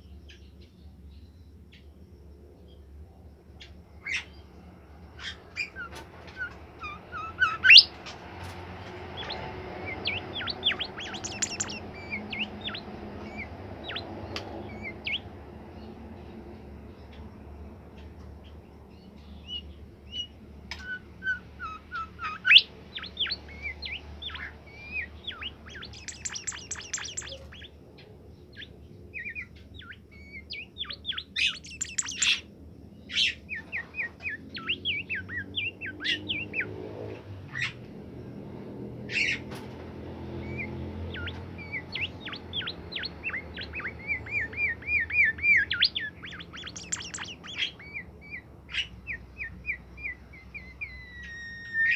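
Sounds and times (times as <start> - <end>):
bird singing chirps and trills: 5.6 - 8.2, 8.9 - 15.9, 21.6 - 36.7, 40.4 - 51.9.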